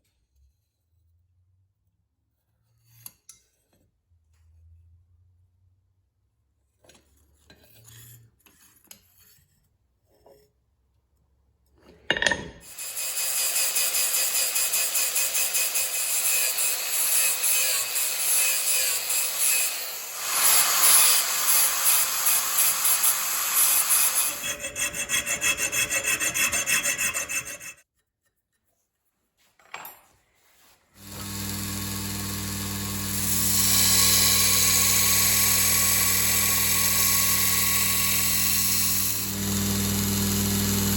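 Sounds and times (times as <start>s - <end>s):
hand tool rasping steel: 12.6s - 28.6s, 31.0s - 40.9s
electric grinder running: 12.7s - 24.6s, 31.0s - 40.9s.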